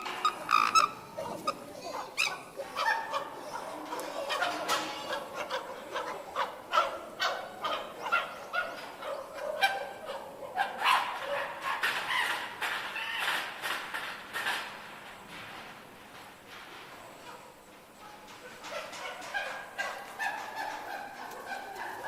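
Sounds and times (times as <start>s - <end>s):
chimpanzees screaming: 0.0s - 4.6s.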